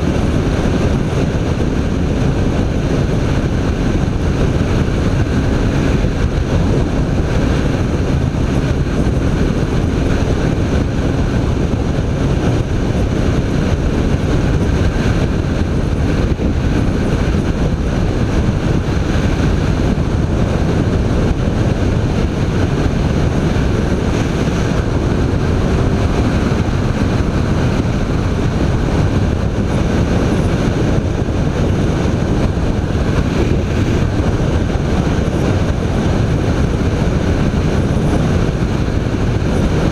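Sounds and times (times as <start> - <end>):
motorcycle engine running: 0.0 - 39.9
wind rush on microphone: 0.0 - 39.9.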